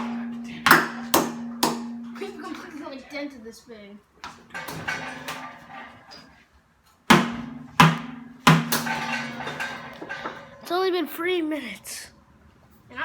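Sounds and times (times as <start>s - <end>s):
hammer striking ringing steel tank: 0.0s - 2.9s, 7.1s - 10.6s.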